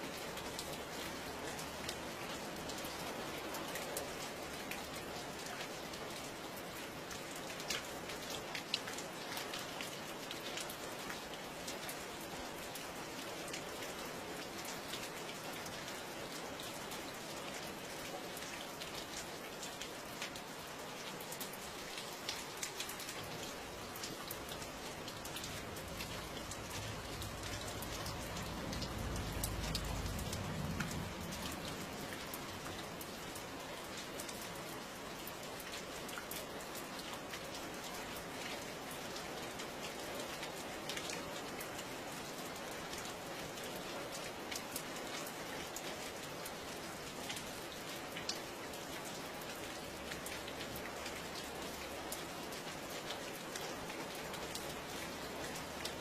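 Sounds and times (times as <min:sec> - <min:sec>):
steady rain: 0:00.0 - 0:56.0
raindrops ticking: 0:21.2 - 0:36.8.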